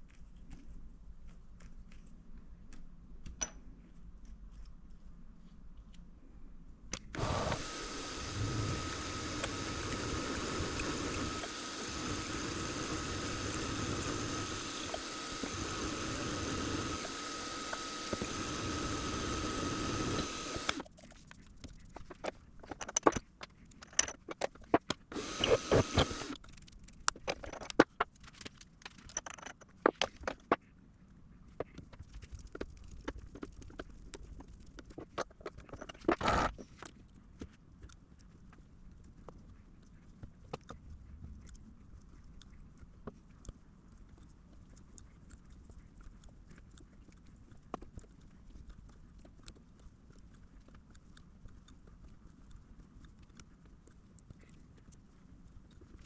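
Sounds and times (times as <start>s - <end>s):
machine tool motor whine: 7.2s - 20.8s, 25.1s - 26.4s
metal parts clicking and tapping: 21.9s - 25.1s, 27.0s - 30.5s.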